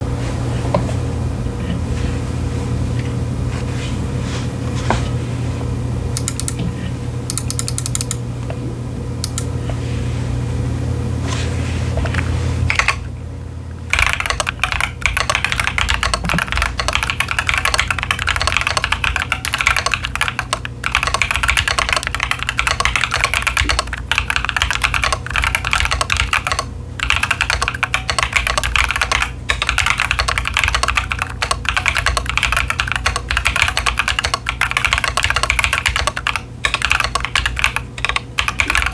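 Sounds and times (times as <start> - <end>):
steady low hum: 0.0 - 38.9
mechanical keyboard key clacks: 6.2 - 6.6, 7.3 - 8.2, 9.2 - 9.5.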